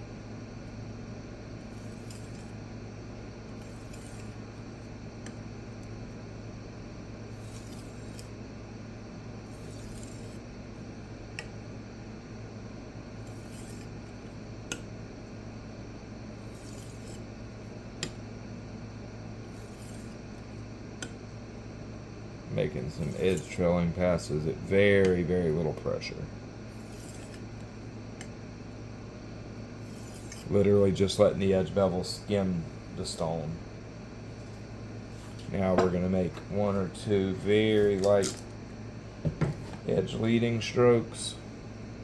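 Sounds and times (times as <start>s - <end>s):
steady low hum: 0.0s - 42.0s
knife scraping on stone: 1.7s - 2.6s, 3.6s - 4.4s, 7.3s - 8.3s, 9.5s - 10.4s, 13.2s - 13.9s, 16.4s - 17.2s, 19.5s - 20.2s, 22.9s - 23.6s, 26.7s - 27.6s, 29.8s - 30.5s.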